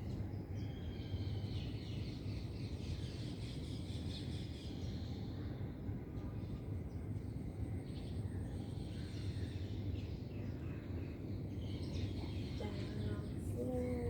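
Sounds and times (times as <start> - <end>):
low background rumble: 11.6 - 14.0.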